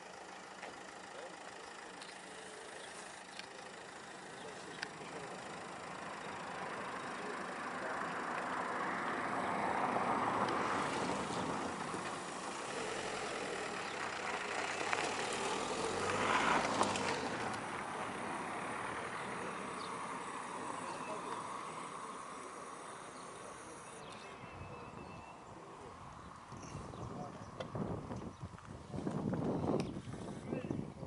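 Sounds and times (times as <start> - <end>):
car engine and tyre noise: 0.0 - 31.0.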